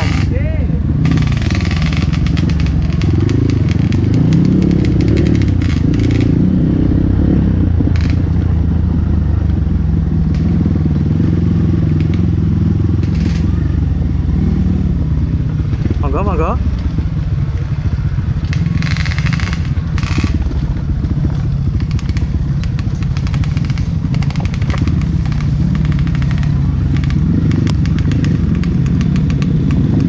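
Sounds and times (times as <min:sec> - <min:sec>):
motorcycle engine running: 0:00.0 - 0:30.0
small clicks and rattles: 0:01.0 - 0:06.4, 0:08.0 - 0:08.4, 0:13.0 - 0:13.5, 0:18.4 - 0:30.0.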